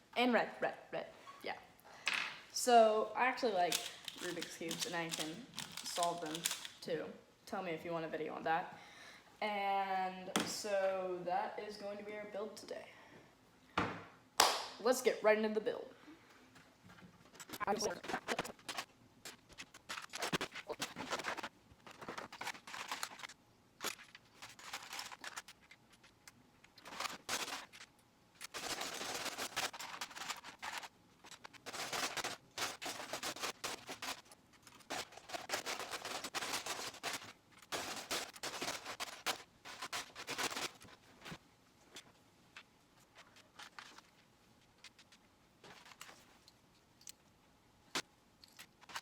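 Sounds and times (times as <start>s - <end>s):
plastic bricks clicking and clattering: 3.7s - 6.8s.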